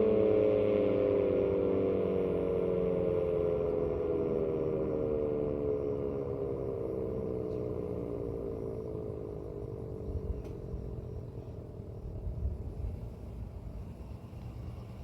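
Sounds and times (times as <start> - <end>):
siren winding down: 0.0 - 12.8
low rumble: 3.8 - 15.0.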